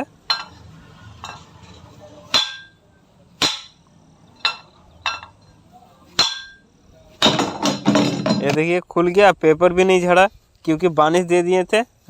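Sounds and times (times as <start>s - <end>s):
hammer striking metal cover: 0.2s - 2.8s, 3.4s - 5.4s, 6.2s - 8.6s.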